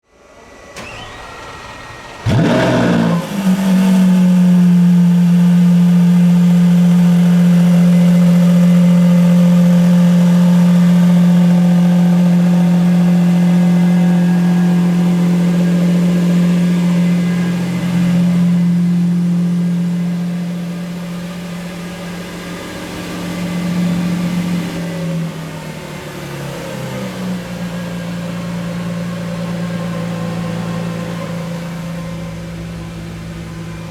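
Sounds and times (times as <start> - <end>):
car engine starting and idling: 0.2 - 33.9
starter whir: 0.7 - 24.5.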